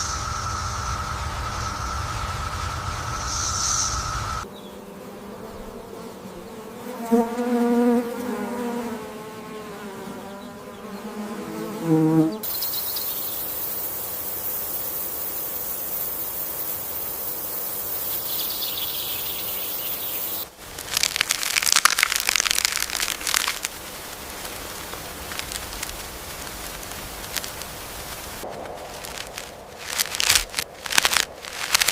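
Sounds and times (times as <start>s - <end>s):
high insect chorus: 0.0s - 4.8s, 11.9s - 31.9s
insect buzzing: 0.0s - 31.9s
rapid crackling clicks: 20.8s - 31.9s.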